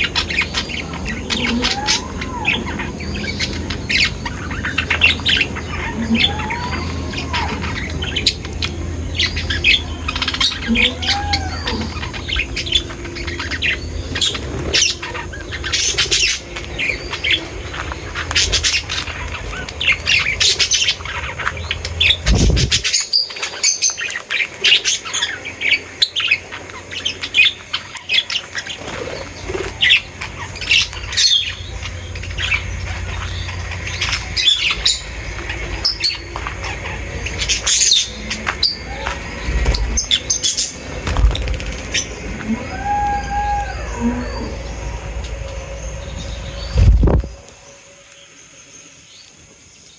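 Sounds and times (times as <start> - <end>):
low steady hum: 0.0 - 49.9
small birds chirping: 0.0 - 49.9.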